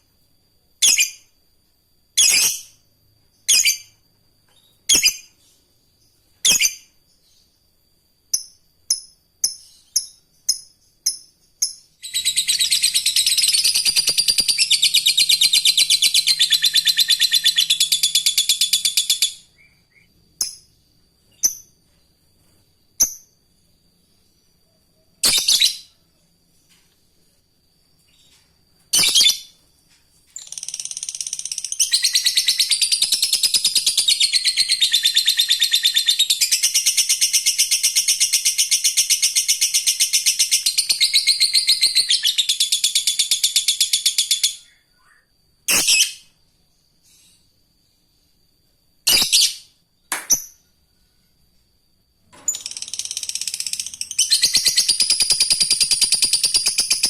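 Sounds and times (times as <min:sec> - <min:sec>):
bird chattering trill: 0:11.7 - 0:20.1.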